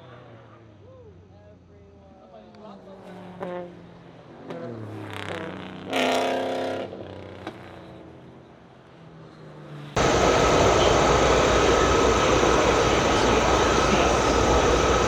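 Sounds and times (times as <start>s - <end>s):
loud steady engine roar: 10.0s - 15.0s
race car engines revving: 10.0s - 15.0s.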